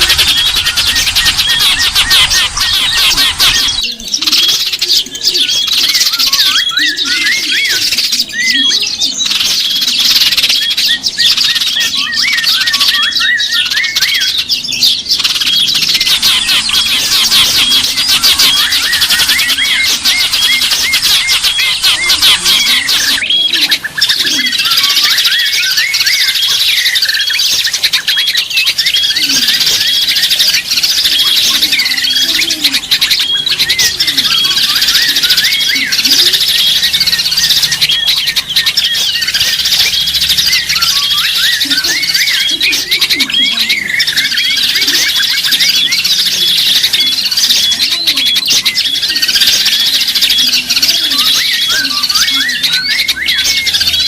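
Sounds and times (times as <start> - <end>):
lower sliding bird calls: 0.0 - 4.8, 15.3 - 27.2
small birds chirping and twittering: 0.0 - 54.0.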